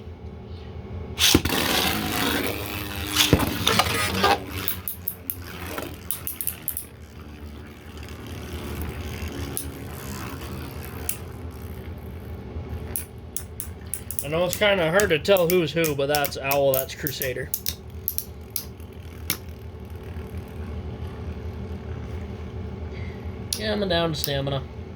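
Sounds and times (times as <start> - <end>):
spinning tops clicking together: 1.2 - 21.9
spinning tops scraping and whirring: 1.2 - 23.6.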